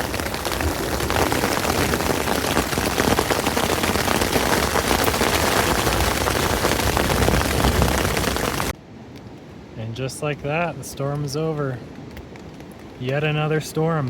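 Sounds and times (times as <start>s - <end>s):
heavy rain on a tent: 0.0s - 8.8s.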